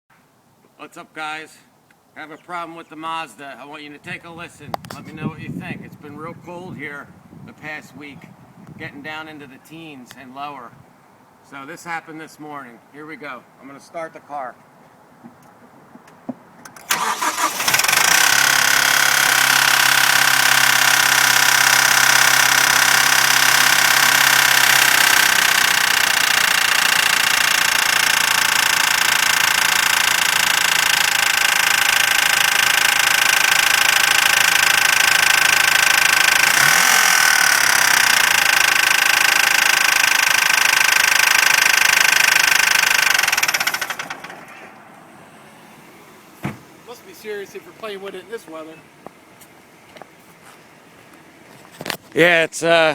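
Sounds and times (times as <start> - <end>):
car engine cranking and idling: 15.3 - 52.0
engine clanking noise: 16.6 - 48.8.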